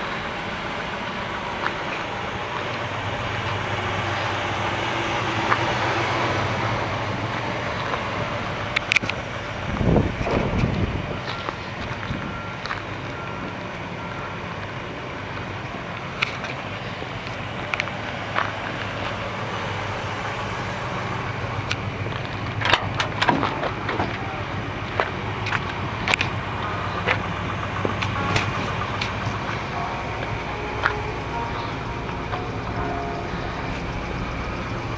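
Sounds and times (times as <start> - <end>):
car engine idling: 0.0 - 34.9.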